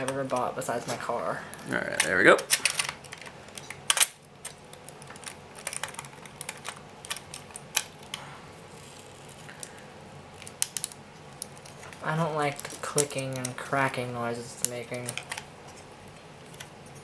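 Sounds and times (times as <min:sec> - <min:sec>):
plastic packaging clicking and cracking: 0:01.9 - 0:08.2, 0:09.1 - 0:13.8, 0:14.6 - 0:15.5.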